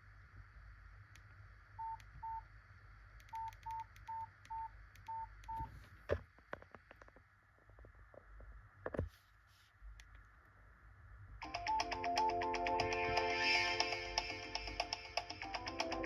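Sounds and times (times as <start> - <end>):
phone keypad beeps: 1.8 - 2.4, 3.3 - 5.6.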